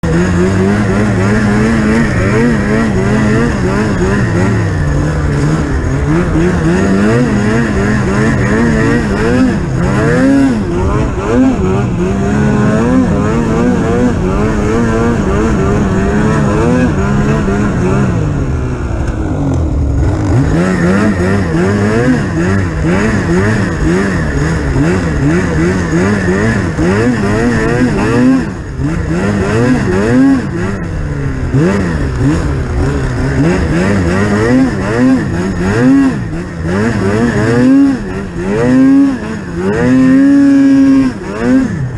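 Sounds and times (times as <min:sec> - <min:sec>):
snowmobile engine revving: 0:00.0 - 0:41.9.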